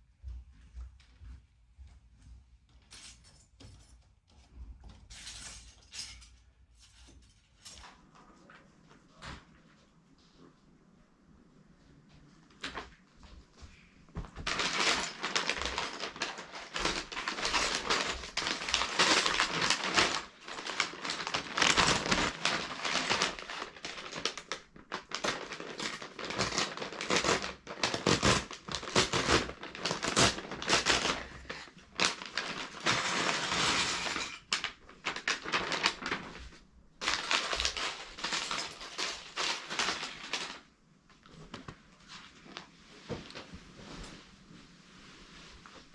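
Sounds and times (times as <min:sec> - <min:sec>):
packaging crinkling and tearing: 0:14.4 - 0:36.4, 0:37.0 - 0:40.7.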